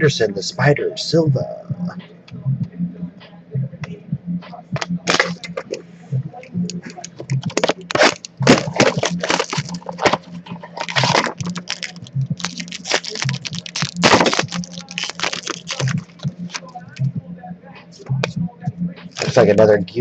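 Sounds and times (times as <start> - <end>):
pack wrapper crinkling: 5.1 - 5.7, 6.7 - 16.8, 19.1 - 19.4.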